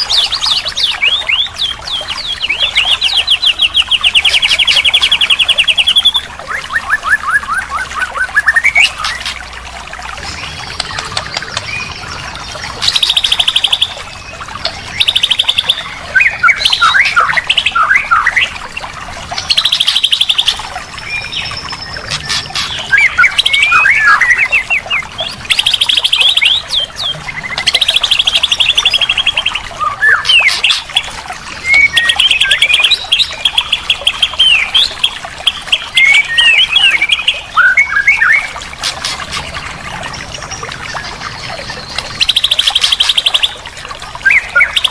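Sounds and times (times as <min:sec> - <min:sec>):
songbird trills and whistles: 0:12.8 - 0:18.5, 0:19.4 - 0:39.4, 0:41.0 - 0:43.6.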